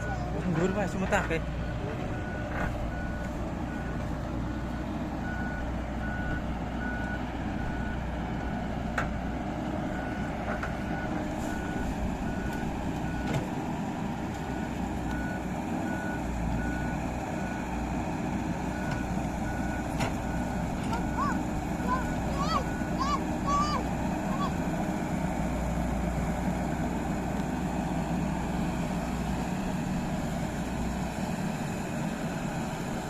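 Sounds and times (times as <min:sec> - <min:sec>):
machine engine rumbling: 0:00.0 - 0:33.0
reversing alarm beeping: 0:01.6 - 0:08.7, 0:14.5 - 0:17.7.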